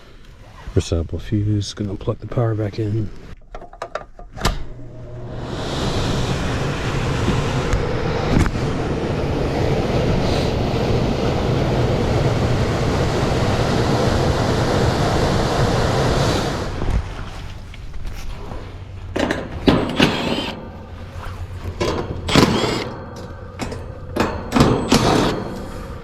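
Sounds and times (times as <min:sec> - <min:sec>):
air handler blower running: 0:04.8 - 0:16.8, 0:19.1 - 0:26.0.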